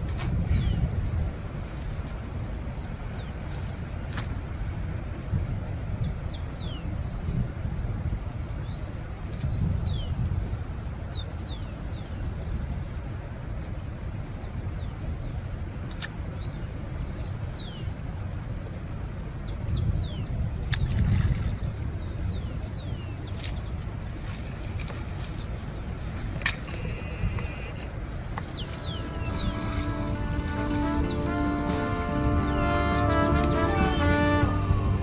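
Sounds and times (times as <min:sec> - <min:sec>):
steady low rumble: 0:23.6 - 0:35.0.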